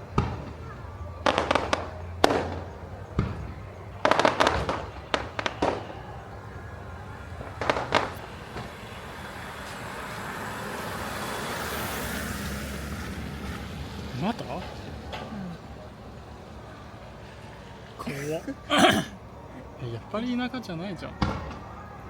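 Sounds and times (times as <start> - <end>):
fireworks cracking: 0.0 - 6.4, 7.1 - 15.3.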